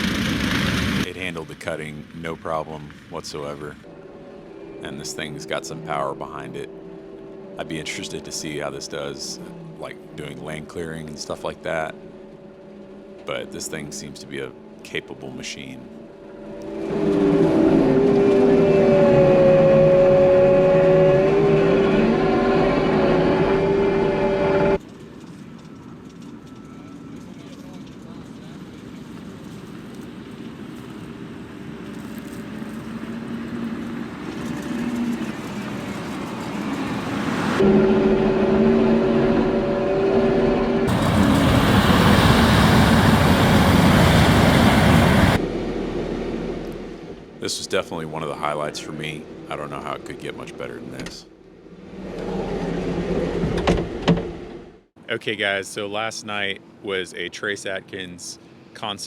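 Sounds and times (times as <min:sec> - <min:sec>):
loader engine droning: 0:00.0 - 0:54.8
hydraulic whine: 0:16.1 - 0:24.8, 0:31.4 - 0:47.4.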